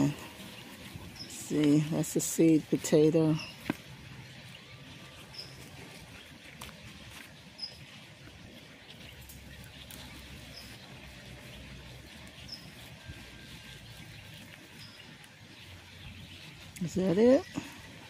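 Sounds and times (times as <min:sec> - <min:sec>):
small bird chirping: 0:00.0 - 0:17.9.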